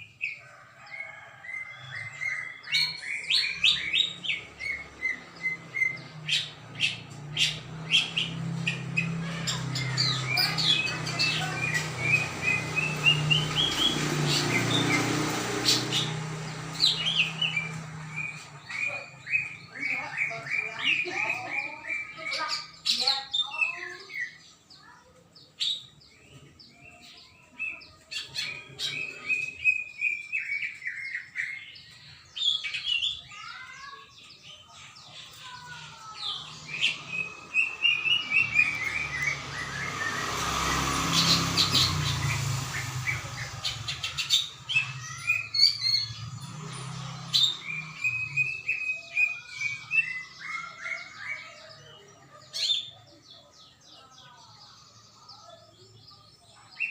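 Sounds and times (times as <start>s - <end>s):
broad rushing noise: 36.2s - 48.7s.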